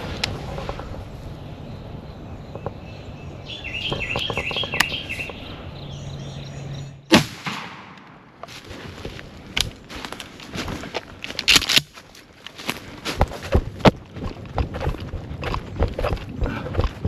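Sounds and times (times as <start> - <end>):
songbirds singing: 0.8 - 7.1
loud echoing gunshot: 7.1 - 8.3.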